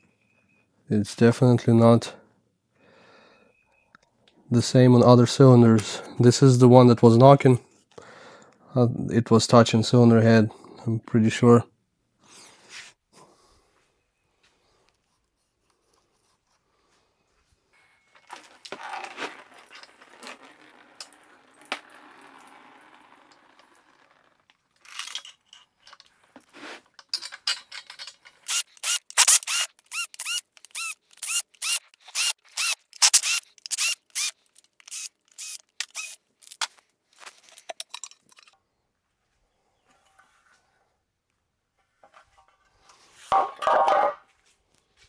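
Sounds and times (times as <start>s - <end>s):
clatter of tools on metal: 27.0s - 31.3s, 32.0s - 38.6s.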